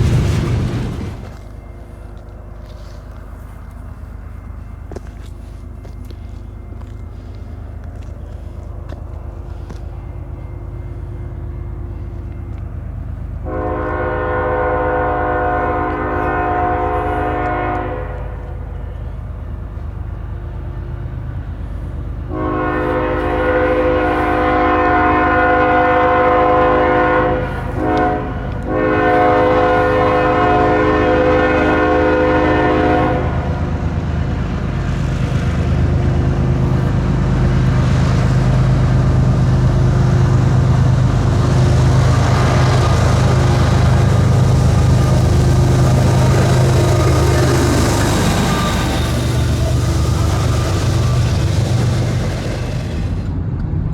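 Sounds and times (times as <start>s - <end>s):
diesel engine rumble and rolling train: 0.0s - 53.9s
locomotive air horn blasts: 13.4s - 18.9s, 22.3s - 34.1s, 39.7s - 53.2s.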